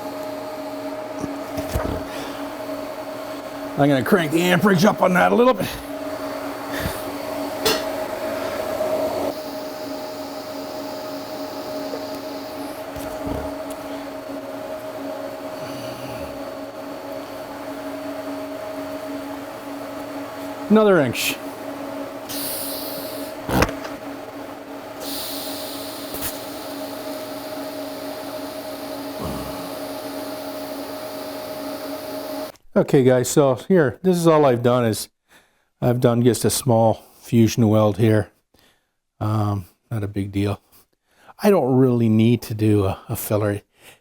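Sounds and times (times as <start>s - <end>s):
welder humming and hissing: 0.0s - 32.5s.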